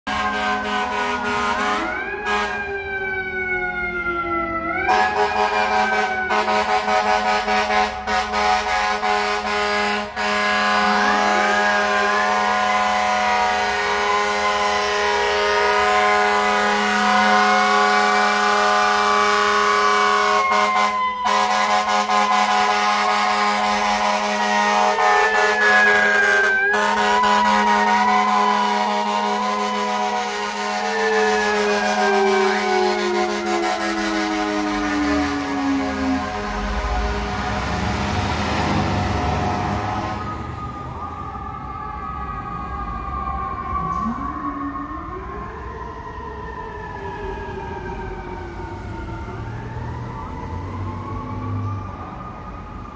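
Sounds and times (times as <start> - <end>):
sirens wailing: 0.0 - 52.9
air horns blasting: 0.1 - 2.8, 4.8 - 40.6.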